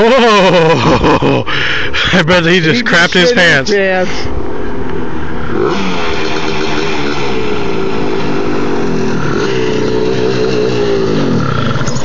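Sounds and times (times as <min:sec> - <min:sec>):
quad engine revving: 0:05.4 - 0:12.0.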